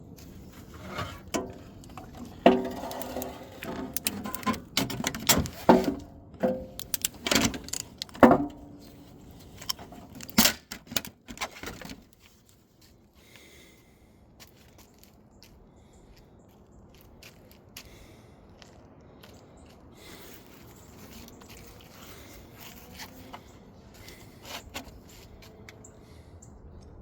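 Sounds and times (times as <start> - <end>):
metal tools clinking: 0.6 - 12.0.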